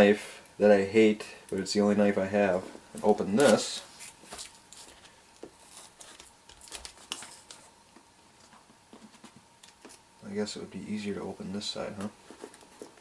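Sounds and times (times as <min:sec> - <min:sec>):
packaging crinkling and tearing: 0:03.0 - 0:07.7.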